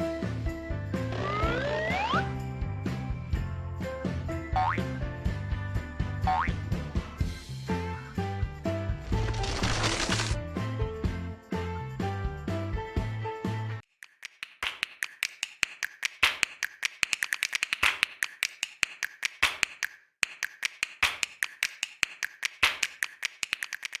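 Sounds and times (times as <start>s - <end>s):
rapid light tapping and clicking: 13.9s - 24.0s.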